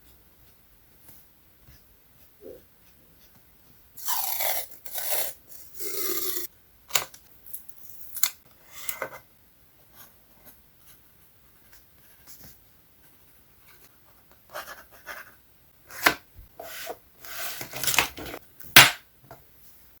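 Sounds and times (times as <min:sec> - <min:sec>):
paper rustling and scraping: 0:15.9 - 0:18.4.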